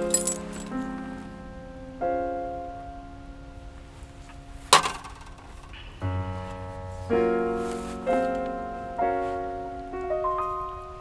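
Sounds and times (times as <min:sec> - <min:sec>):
sharp ringing clink: 0:00.0 - 0:00.9
piano chords: 0:00.0 - 0:11.0.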